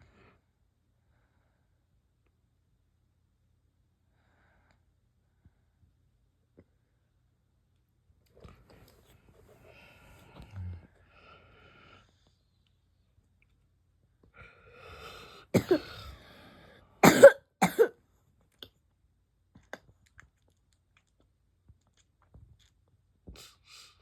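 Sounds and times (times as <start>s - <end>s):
person hiccuping: 17.0s - 17.9s.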